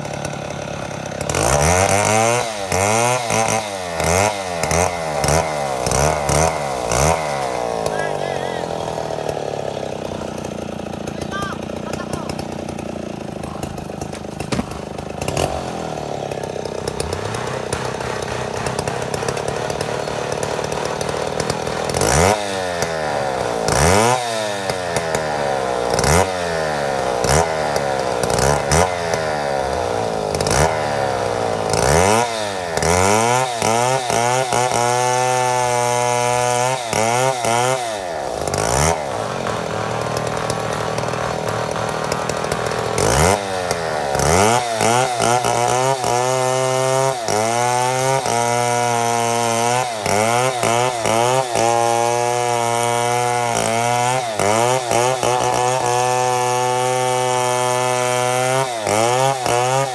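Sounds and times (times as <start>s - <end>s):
chainsaw milling a log: 0.0s - 59.9s.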